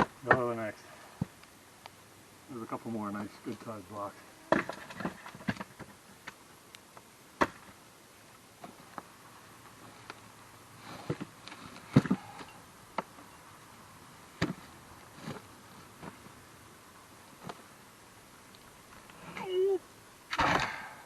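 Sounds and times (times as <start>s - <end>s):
firewood blocks knocking and clunking: 4.5s - 6.0s.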